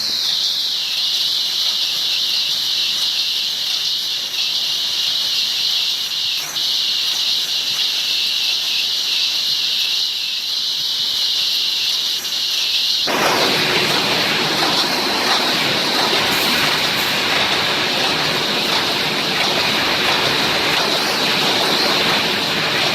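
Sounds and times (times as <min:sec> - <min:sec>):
welding machine hissing: 0:00.0 - 0:22.9
rushing noise: 0:13.1 - 0:22.9.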